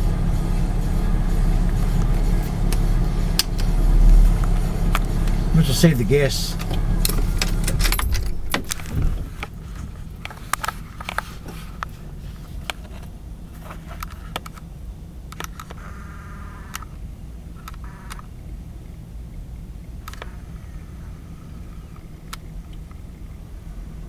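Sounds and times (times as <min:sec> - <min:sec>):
low hum: 0:00.0 - 0:13.7.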